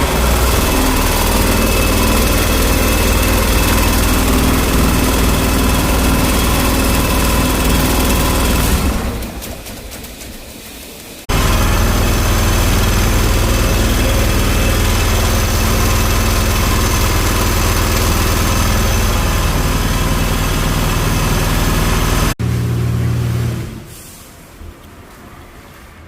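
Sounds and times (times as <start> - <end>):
pressure washer pump hissing: 0.0 - 9.2, 11.3 - 22.3.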